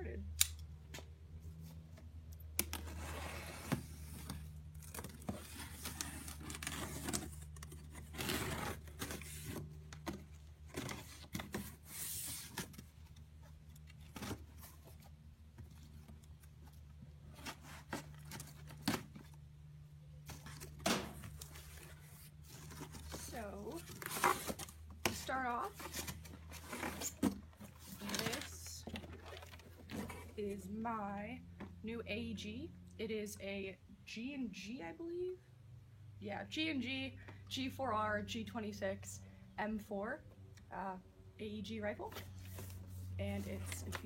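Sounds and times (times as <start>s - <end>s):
cardboard box scraping and rustling: 2.8s - 13.0s, 25.6s - 30.4s.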